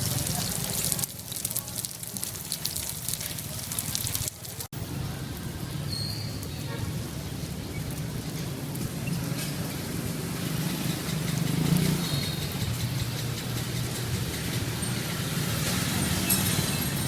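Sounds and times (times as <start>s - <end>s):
engine idling: 6.9s - 17.0s.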